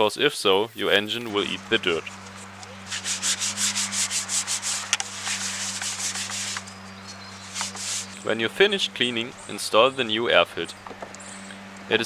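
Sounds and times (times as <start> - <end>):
cloth wiping plastic box: 0.0 - 1.3.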